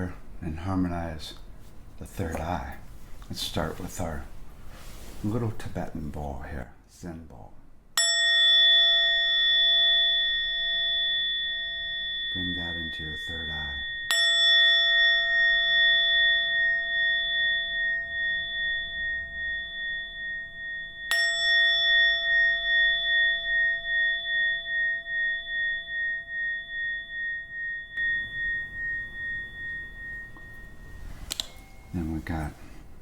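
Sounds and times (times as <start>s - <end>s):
singing bowl ringing: 8.0s - 33.0s.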